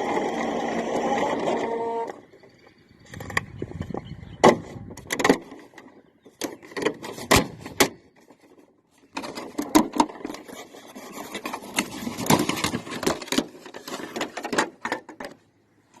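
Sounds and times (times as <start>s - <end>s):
toy truck motor and gears: 0.0s - 3.6s
clattering rattles and knocks: 4.4s - 15.4s.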